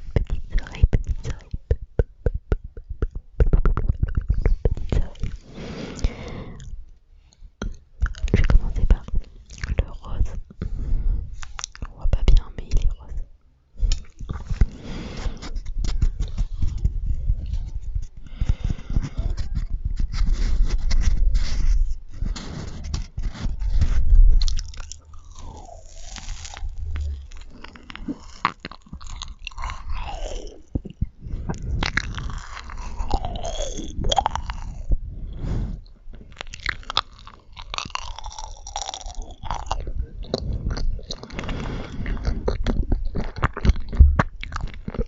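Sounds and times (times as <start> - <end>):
chewing and biting mouth sounds: 7.6 - 10.6, 11.4 - 13.0, 13.8 - 35.0, 36.1 - 45.0.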